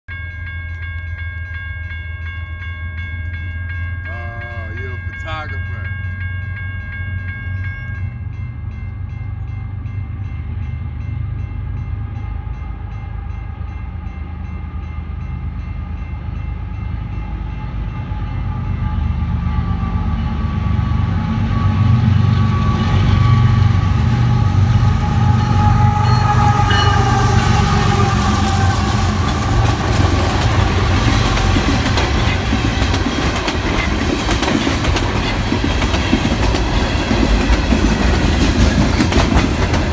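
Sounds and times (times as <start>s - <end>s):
diesel locomotive rumble: 3.4s - 39.9s
train horn: 17.5s - 33.0s
train cars clattering over rails: 23.8s - 39.9s.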